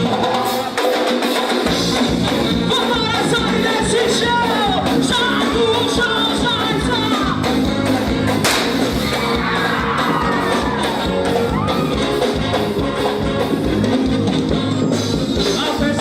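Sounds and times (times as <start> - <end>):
live band playing upbeat song: 0.0 - 16.0
person singing lead vocal: 2.7 - 7.5, 15.4 - 16.0.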